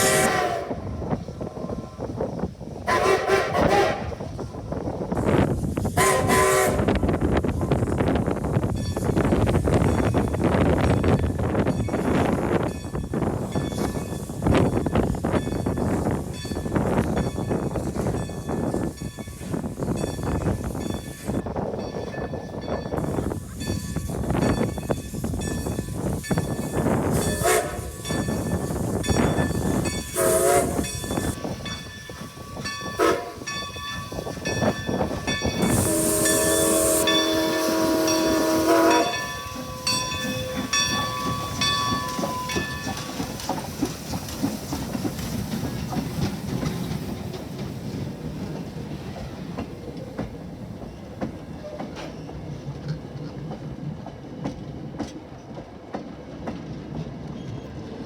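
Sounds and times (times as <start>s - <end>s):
train whistle blowing: 0.0s - 1.0s, 2.8s - 4.4s, 5.9s - 7.0s, 27.1s - 28.2s, 30.1s - 31.4s, 32.9s - 33.6s, 35.6s - 41.4s
steam hissing: 0.0s - 10.6s, 23.0s - 52.4s
train wheels clicking over rails: 7.5s - 58.0s.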